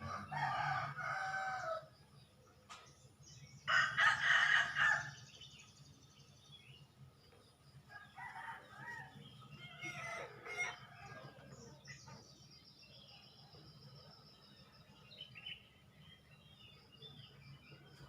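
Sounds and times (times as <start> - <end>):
rooster crowing: 0.0 - 1.9, 3.7 - 5.2.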